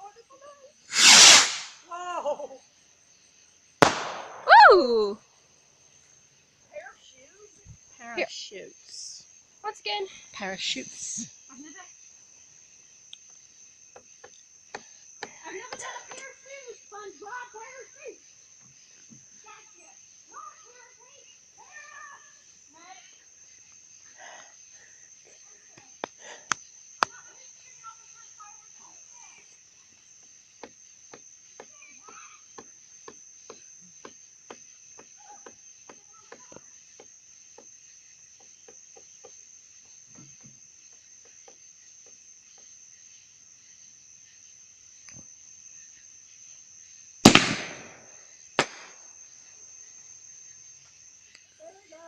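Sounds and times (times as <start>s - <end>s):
crickets chirping: 0.0s - 52.0s
firework bang: 0.9s - 1.8s, 3.8s - 4.5s, 47.3s - 49.0s
faint clicks: 51.3s - 51.5s.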